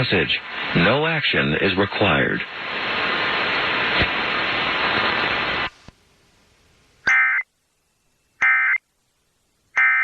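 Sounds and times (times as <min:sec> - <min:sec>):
steady static hiss: 0:00.0 - 0:10.0
electronic data tones: 0:07.1 - 0:07.4, 0:08.4 - 0:08.8, 0:09.8 - 0:10.0.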